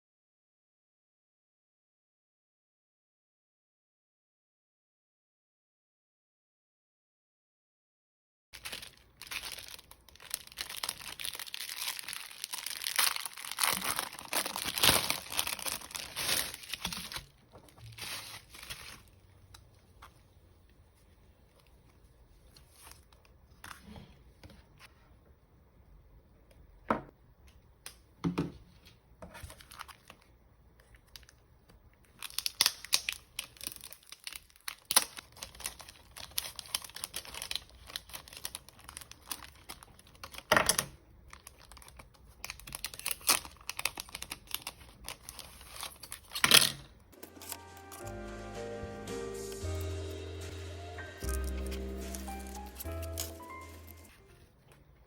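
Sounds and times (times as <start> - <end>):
packaging tearing and crinkling: 8.6 - 19.2, 32.0 - 48.1, 51.2 - 54.4.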